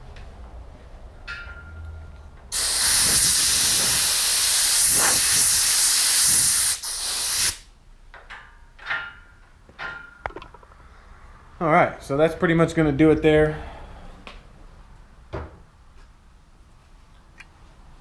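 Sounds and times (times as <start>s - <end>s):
spray bottle spraying water: 2.5s - 7.6s.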